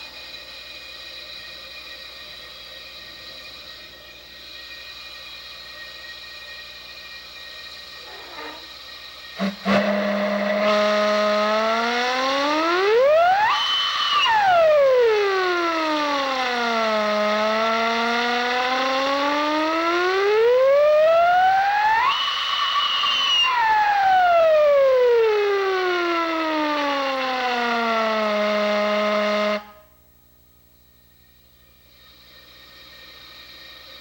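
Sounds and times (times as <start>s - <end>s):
slide whistle blown with air: 9.4s - 29.9s.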